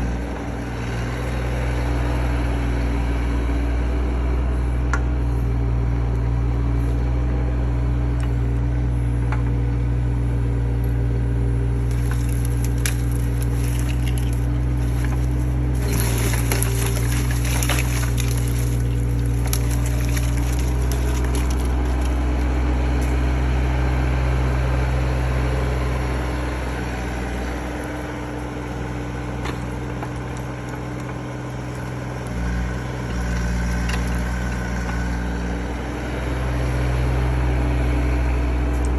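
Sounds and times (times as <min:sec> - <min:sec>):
diesel engine running: 0:00.0 - 0:38.9
wood crushing and snapping: 0:11.7 - 0:23.3, 0:29.3 - 0:35.2.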